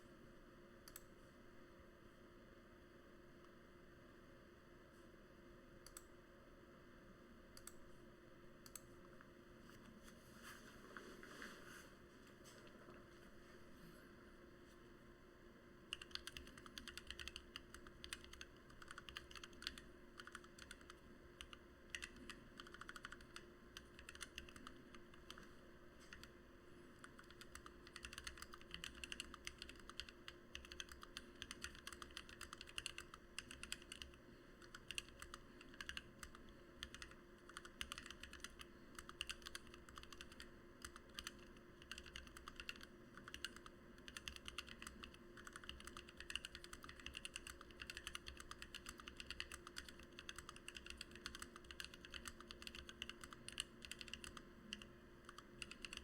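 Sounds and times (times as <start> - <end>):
fast typing on mechanical keyboard: 15.9 - 25.4, 26.1 - 26.3, 27.0 - 56.0.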